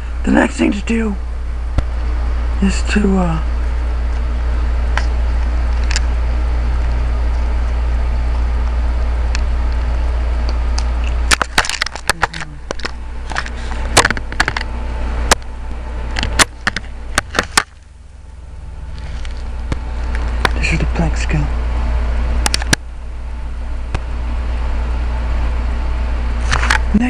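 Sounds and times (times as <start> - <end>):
steady low hum: 0.0 - 27.0
plastic packaging clicks and crackles: 11.3 - 14.6.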